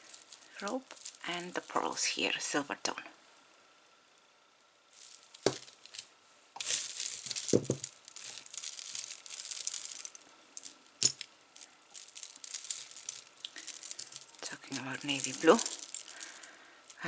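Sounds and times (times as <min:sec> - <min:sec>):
jewelry clinking and jingling: 0:00.0 - 0:02.0, 0:04.8 - 0:17.0
rustling: 0:00.0 - 0:02.4, 0:04.8 - 0:17.0
pieces knocking when set down: 0:05.4 - 0:05.8, 0:06.6 - 0:10.2.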